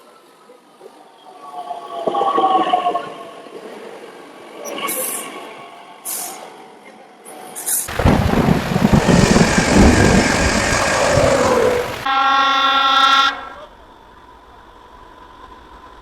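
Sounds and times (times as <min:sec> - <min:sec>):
train rumbling: 0:07.9 - 0:12.1
train horn blast: 0:11.0 - 0:13.6.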